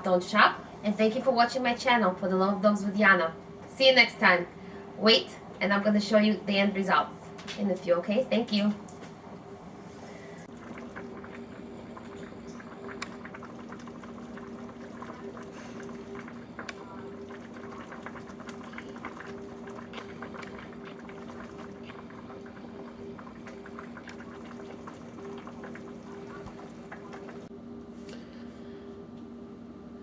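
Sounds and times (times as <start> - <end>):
steady low hum: 0.0 - 30.0
pot simmering with bubbling pops: 10.4 - 27.5.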